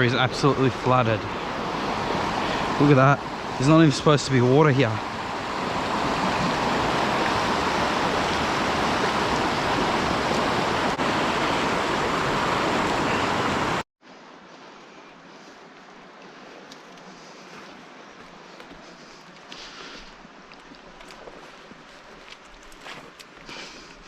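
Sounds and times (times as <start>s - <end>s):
fast-flowing river water rushing: 0.0s - 13.8s.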